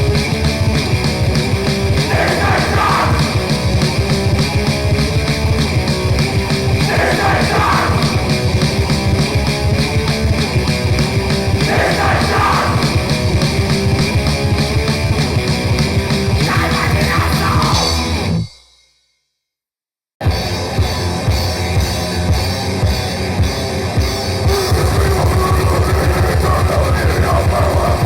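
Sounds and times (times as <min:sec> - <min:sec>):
very fast drums: 0:00.0 - 0:18.4, 0:20.2 - 0:28.0
bass guitar: 0:00.0 - 0:18.5, 0:20.2 - 0:28.0
distorted guitars: 0:00.0 - 0:18.6, 0:20.2 - 0:28.0.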